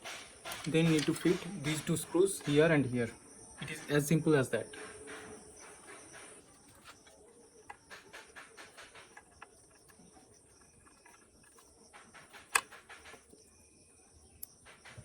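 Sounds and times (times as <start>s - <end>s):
light clicks and taps of parts: 0.0s - 2.7s.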